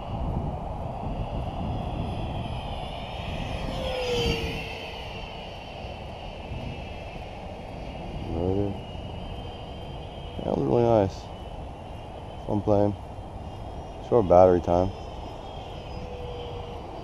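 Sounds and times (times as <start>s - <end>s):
model jet fan whining: 0.0s - 17.0s.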